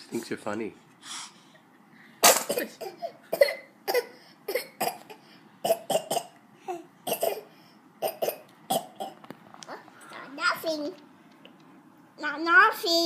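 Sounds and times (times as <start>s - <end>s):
man coughing: 2.2s - 6.3s.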